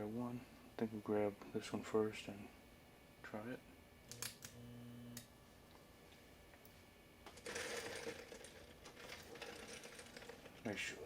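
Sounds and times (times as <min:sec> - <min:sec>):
fan motor hum: 0:00.0 - 0:11.0
motor rattling and scraping: 0:07.4 - 0:10.7.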